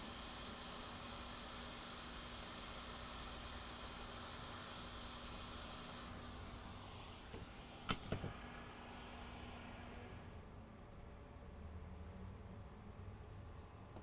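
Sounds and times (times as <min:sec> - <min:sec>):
hot air station hissing: 0:00.0 - 0:10.5.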